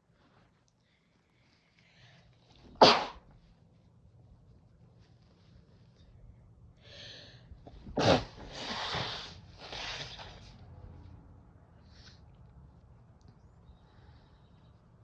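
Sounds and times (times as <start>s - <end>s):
person sneezing: 2.7s - 3.3s, 7.8s - 9.4s
noisy breathing: 6.7s - 10.2s, 13.6s - 15.0s.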